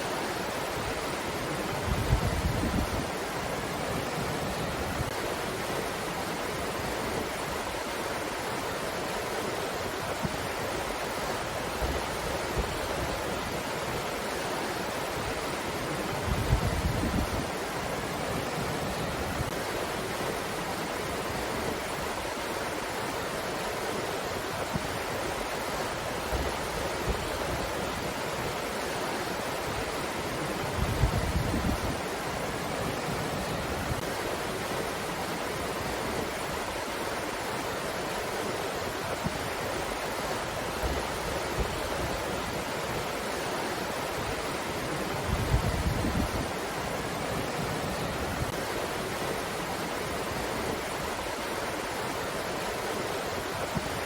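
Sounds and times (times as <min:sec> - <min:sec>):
gusts buffeting microphone: 0:00.8 - 0:05.2, 0:15.2 - 0:19.6, 0:29.6 - 0:34.2, 0:44.1 - 0:51.2.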